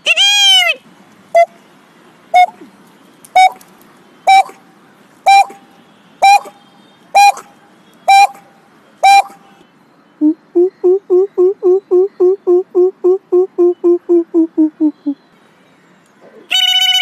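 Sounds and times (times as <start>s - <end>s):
man imitating bird call: 2.4s - 2.6s, 4.3s - 4.6s, 5.3s - 5.6s, 6.2s - 6.5s, 7.2s - 7.4s, 8.1s - 8.4s, 9.0s - 9.4s, 10.2s - 15.2s, 16.3s - 17.0s.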